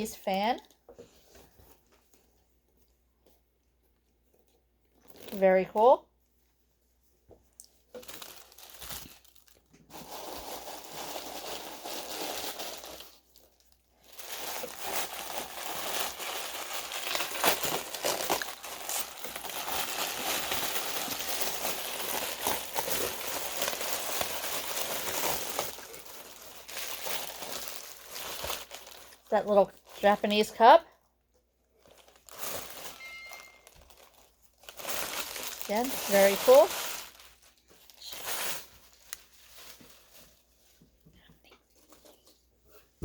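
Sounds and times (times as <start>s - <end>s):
packaging wrap crinkling: 7.5s - 30.5s, 31.6s - 41.0s.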